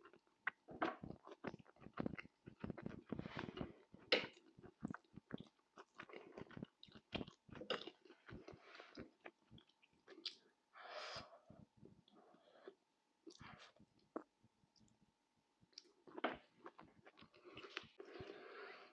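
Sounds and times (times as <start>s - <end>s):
chewing with mouth clicks: 0.0s - 10.5s.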